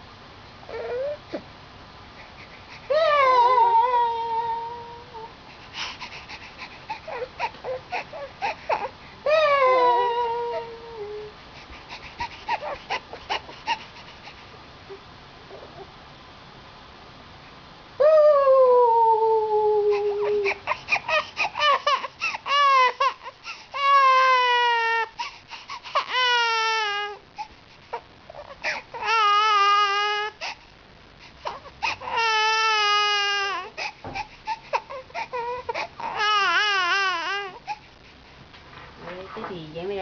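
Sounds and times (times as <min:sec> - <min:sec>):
baby sobbing: 0:02.4 - 0:05.3, 0:06.0 - 0:11.3, 0:12.0 - 0:13.9, 0:19.1 - 0:30.6, 0:31.4 - 0:37.9
baby crying: 0:02.9 - 0:05.3, 0:07.0 - 0:11.3, 0:12.2 - 0:13.8, 0:19.0 - 0:27.2, 0:28.3 - 0:30.6, 0:31.4 - 0:37.9.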